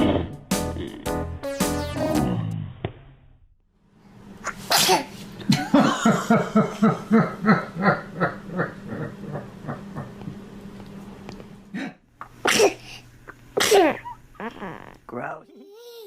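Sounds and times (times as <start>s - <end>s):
rhythmic laughter: 0.0s - 2.3s, 5.4s - 10.4s
person sneezing: 4.5s - 5.2s, 11.8s - 13.0s, 13.6s - 14.8s.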